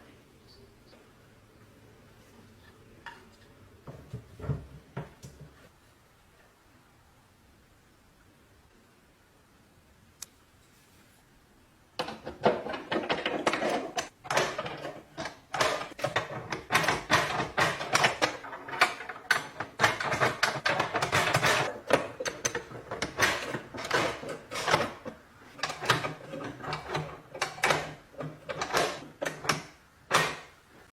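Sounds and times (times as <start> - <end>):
lock mechanism clicking and rattling: 12.0 - 30.6.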